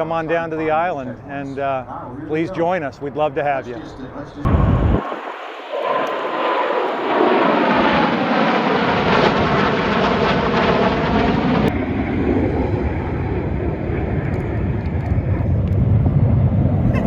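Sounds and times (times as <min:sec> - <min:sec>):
airplane engine passing: 0:03.8 - 0:17.0.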